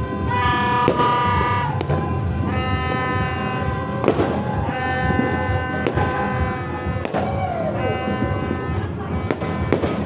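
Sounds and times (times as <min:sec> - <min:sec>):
fireworks bangs: 0:00.0 - 0:10.0
horn blasts: 0:00.0 - 0:10.0.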